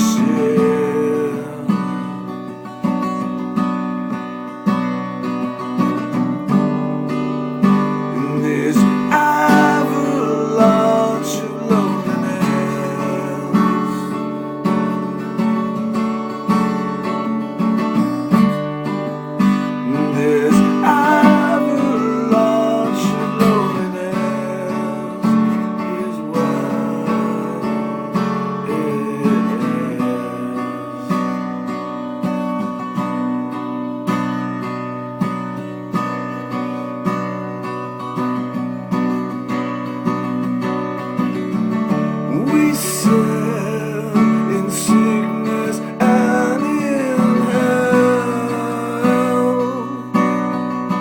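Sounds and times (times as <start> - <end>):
person singing: 0.0 - 2.2, 8.1 - 14.3, 19.8 - 31.5, 42.3 - 50.4
acoustic guitar strumming: 0.0 - 51.0.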